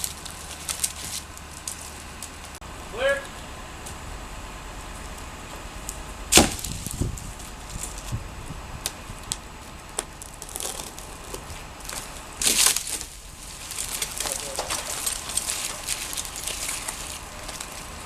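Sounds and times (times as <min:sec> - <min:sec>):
wood cracking: 0:00.0 - 0:02.6, 0:05.9 - 0:08.2, 0:08.8 - 0:18.0
heavy thud: 0:06.3 - 0:07.2.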